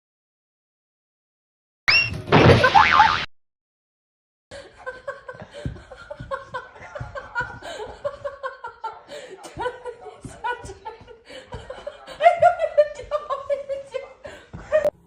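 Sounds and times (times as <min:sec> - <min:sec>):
people laughing and chuckling: 0:04.5 - 0:15.0.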